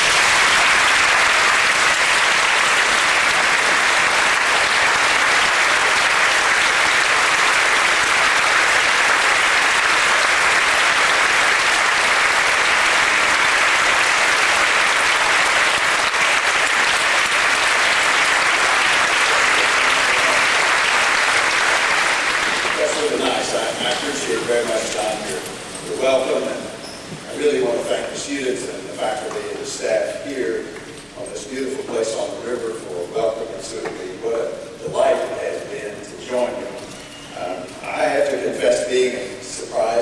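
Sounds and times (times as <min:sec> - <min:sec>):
large audience applauding: 0:00.0 - 0:25.8.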